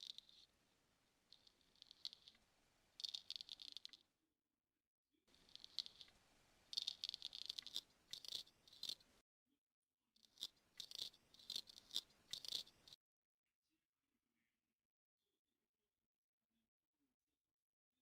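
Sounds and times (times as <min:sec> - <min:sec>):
razor scraping hair: 0:10.2 - 0:13.0.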